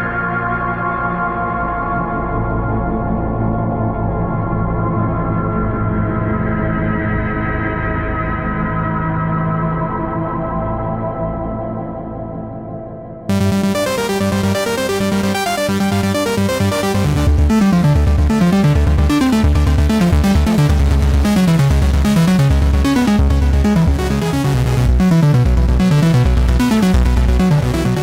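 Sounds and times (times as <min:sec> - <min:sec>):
pulsing bass line: 0:13.3 - 0:28.0
sequenced synth pattern: 0:13.3 - 0:28.0.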